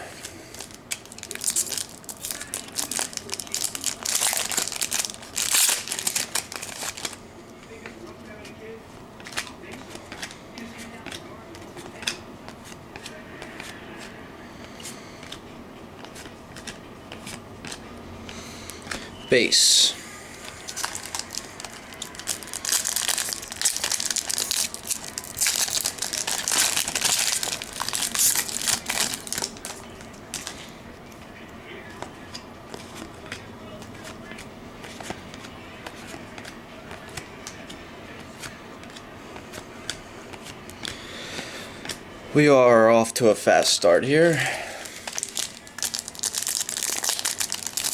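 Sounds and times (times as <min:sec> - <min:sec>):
trading cards flipping and sliding: 0:09.2 - 0:19.1, 0:31.9 - 0:42.0.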